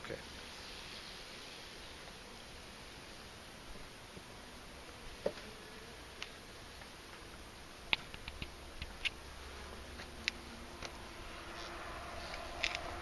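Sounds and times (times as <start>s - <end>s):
wooden beehive parts clicking: 7.9s - 9.2s, 12.3s - 12.9s.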